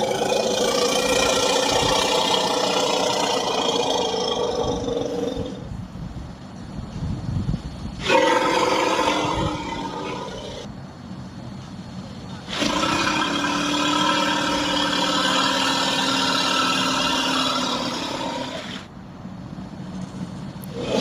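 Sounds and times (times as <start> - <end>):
dinosaur creature call: 0.0 - 5.7, 8.0 - 10.7, 12.5 - 18.9.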